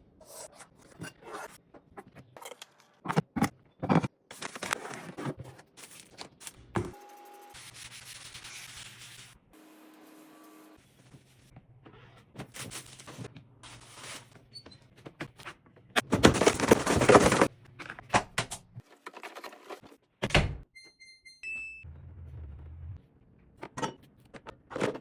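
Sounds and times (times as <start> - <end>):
things knocking and clattering: 16.0 - 17.5.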